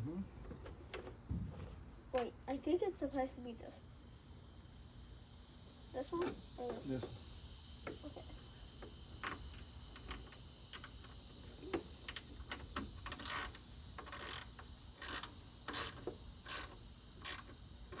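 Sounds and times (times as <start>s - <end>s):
socket ratchet clicking: 12.0s - 17.6s.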